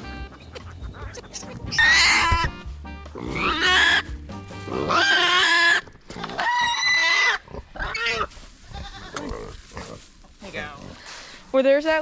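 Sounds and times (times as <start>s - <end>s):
pig squealing: 0.0s - 2.5s, 3.2s - 10.0s.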